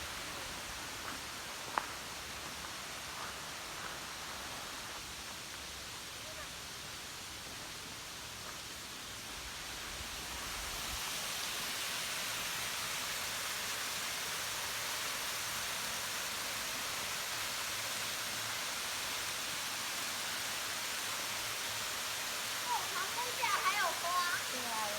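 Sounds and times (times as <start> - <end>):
waterfall rushing: 9.7 - 24.9.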